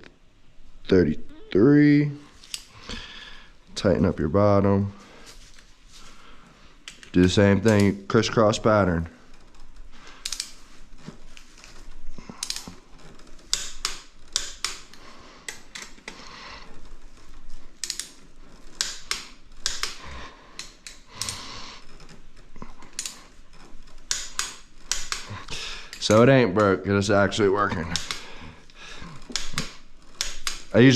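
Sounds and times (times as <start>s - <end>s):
torque wrench ratchet clicking: 12.4s - 16.1s, 29.2s - 30.8s.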